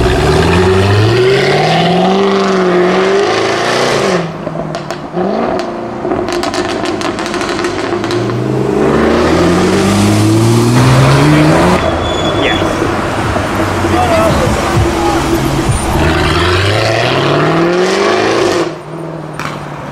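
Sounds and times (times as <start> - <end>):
car engine accelerating hard: 0.0 - 11.9, 12.7 - 19.2.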